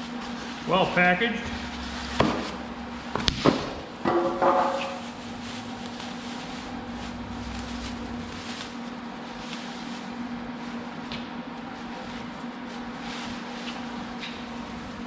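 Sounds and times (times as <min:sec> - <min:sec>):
low electrical hum: 0:00.0 - 0:09.8, 0:13.9 - 0:15.0.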